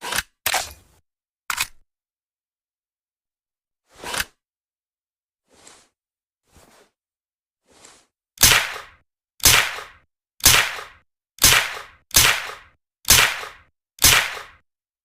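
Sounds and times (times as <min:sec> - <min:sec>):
suppressed gunshots: 0:08.4 - 0:14.6.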